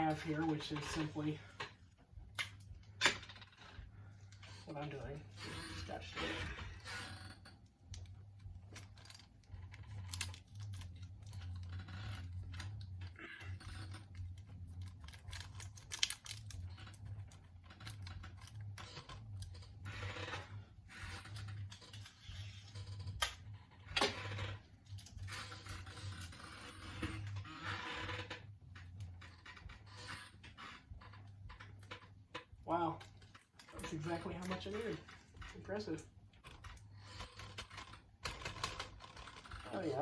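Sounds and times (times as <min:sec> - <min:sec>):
low steady hum: 0:00.0 - 0:40.0
tape clicks and crinkles: 0:00.0 - 0:40.0.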